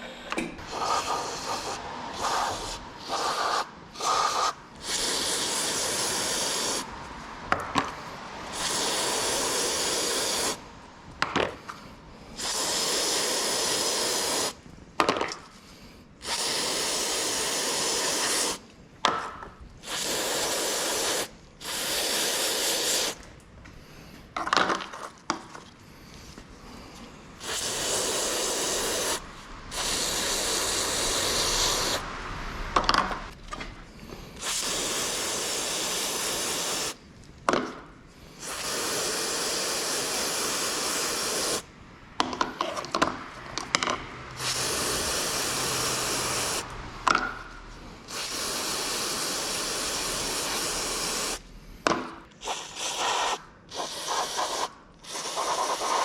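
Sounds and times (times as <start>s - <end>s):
aerosol spray hissing: 0.1s - 6.9s, 8.0s - 10.8s, 11.7s - 14.6s, 16.2s - 18.6s, 19.8s - 23.3s, 26.6s - 32.2s, 34.2s - 37.1s, 38.3s - 41.7s, 44.4s - 46.7s, 48.0s - 51.5s, 52.4s - 56.0s.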